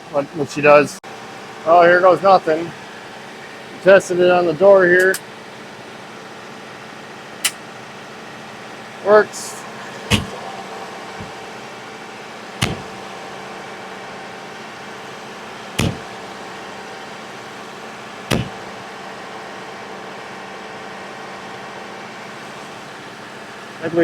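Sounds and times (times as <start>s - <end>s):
steady mechanical hum: 0.0s - 24.0s
door latch snapping shut: 10.1s - 10.4s, 12.6s - 13.0s, 15.8s - 16.1s, 18.3s - 18.8s.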